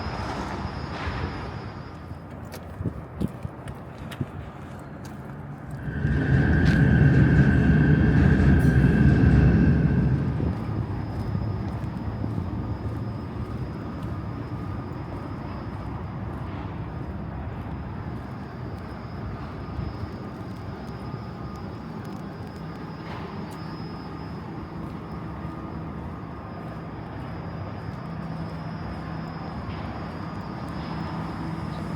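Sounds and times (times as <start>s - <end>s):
city traffic rumble: 0.0s - 31.9s
vehicle passing: 5.8s - 11.2s.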